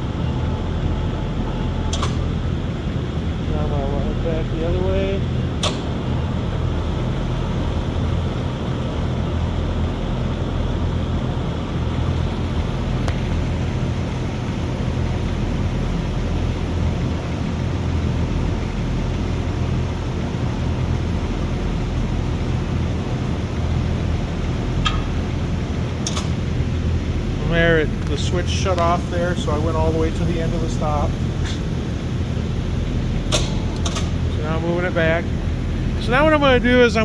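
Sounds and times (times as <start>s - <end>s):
electric drive humming: 0.0s - 37.0s.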